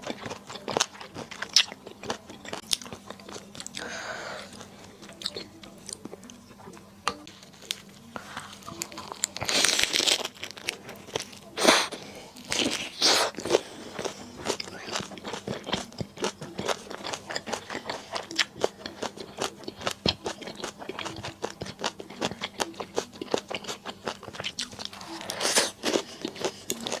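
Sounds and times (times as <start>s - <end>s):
person chewing: 0.0s - 27.0s
crunchy bites: 8.8s - 24.7s.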